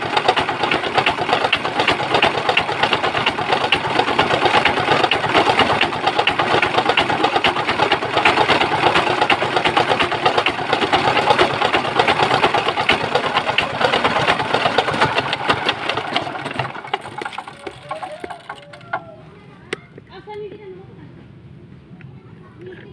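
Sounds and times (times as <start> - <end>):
diesel engine knocking: 0.0 - 19.1.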